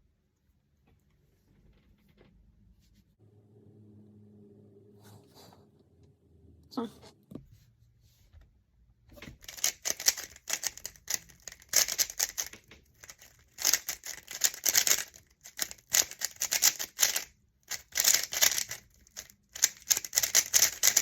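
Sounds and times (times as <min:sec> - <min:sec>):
puzzle cube layers clicking: 0:09.4 - 0:21.0.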